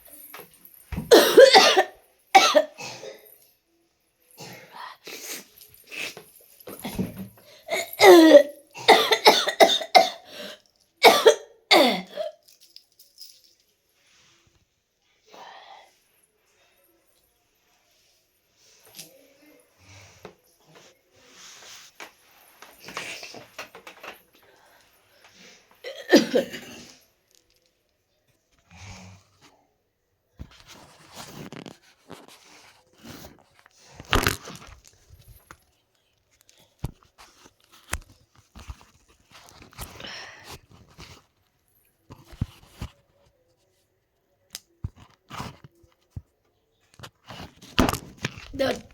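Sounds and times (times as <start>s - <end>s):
person coughing harshly: 1.1s - 3.3s, 7.7s - 12.4s, 25.9s - 27.0s.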